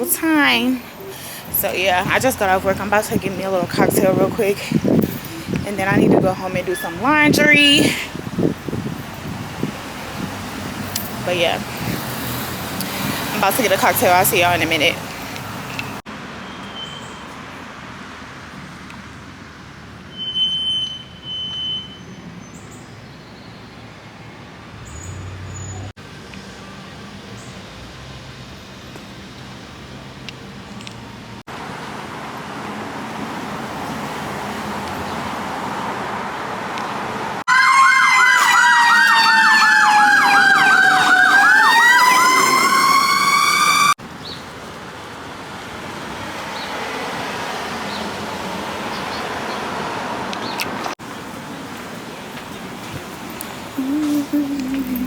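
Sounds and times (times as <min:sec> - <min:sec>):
emergency vehicle siren warbling: 0:37.4 - 0:44.0.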